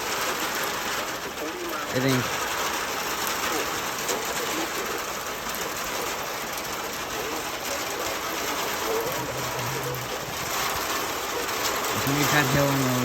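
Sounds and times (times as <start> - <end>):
hailstones ticking on surfaces: 0.0 - 13.0
rain falling: 0.0 - 13.0.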